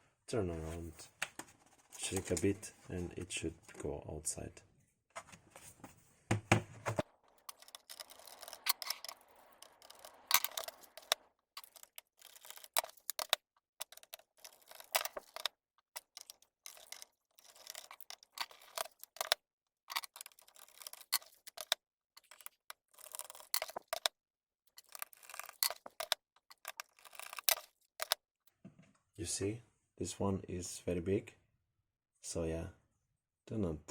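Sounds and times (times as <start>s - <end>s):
screwdriver clicking and scraping: 7.0s - 24.1s, 24.7s - 28.2s
small metal screws set down: 7.0s - 24.1s, 24.7s - 28.2s.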